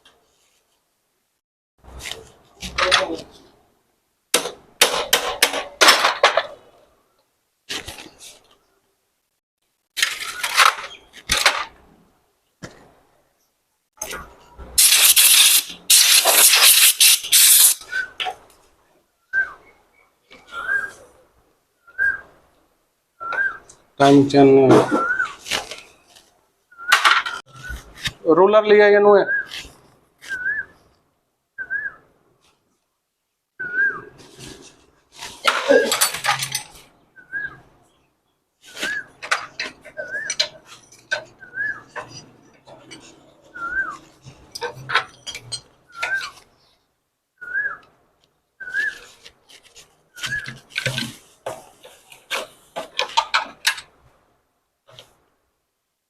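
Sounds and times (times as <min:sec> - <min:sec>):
pressurised hissing spray: 0:14.8 - 0:17.8
bird chirping: 0:24.8 - 0:25.4, 0:37.0 - 0:44.2, 0:45.9 - 0:46.8.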